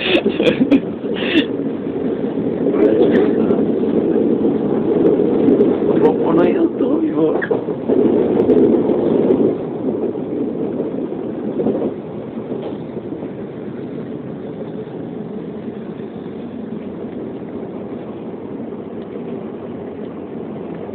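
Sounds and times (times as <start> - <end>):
train rumble inside carriage: 0.0 - 20.9.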